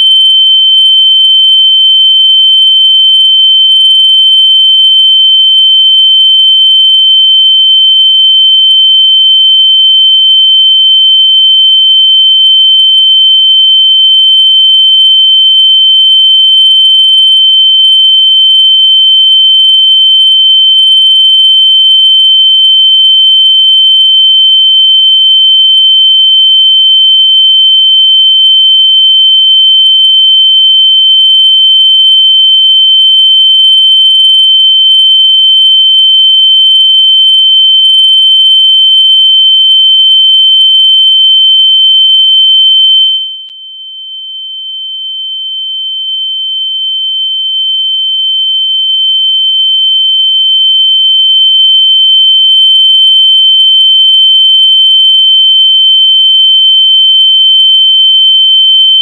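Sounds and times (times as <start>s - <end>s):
high-pitched electronic sine tone: 39.9s - 44.0s.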